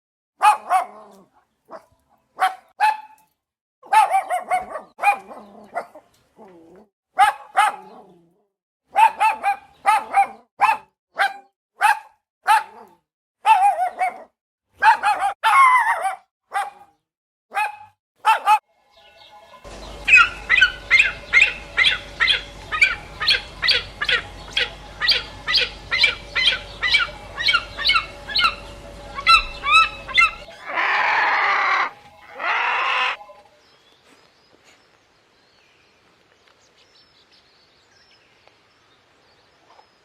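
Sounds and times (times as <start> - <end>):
dog barking: 0.4 - 3.2, 3.8 - 6.1, 7.2 - 8.1, 8.9 - 18.6, 19.7 - 30.5.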